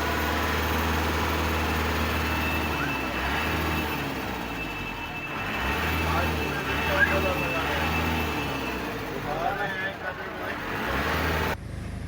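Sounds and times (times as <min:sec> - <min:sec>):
street noise: 0:00.0 - 0:12.0
vehicle engine humming: 0:00.0 - 0:12.0.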